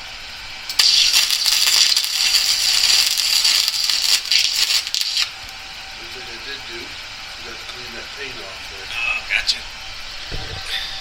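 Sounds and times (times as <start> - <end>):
welding arc crackling: 0.6 - 6.6.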